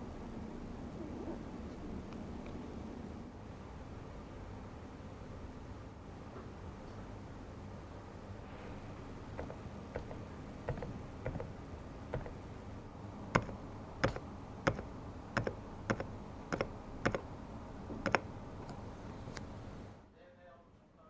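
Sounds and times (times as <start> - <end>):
keyboard keys clicking softly: 9.3 - 12.4, 13.4 - 17.3, 18.0 - 18.8.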